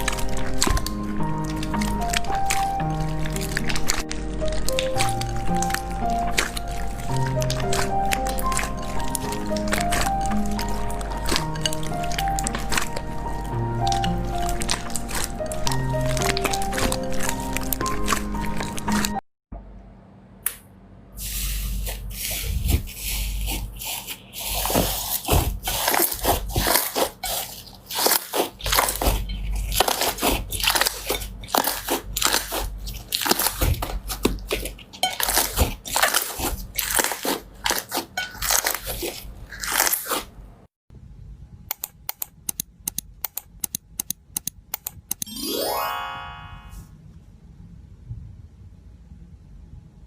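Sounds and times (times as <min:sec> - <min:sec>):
crunchy slime squeezed by hand: 0:00.0 - 0:19.2, 0:21.7 - 0:40.3.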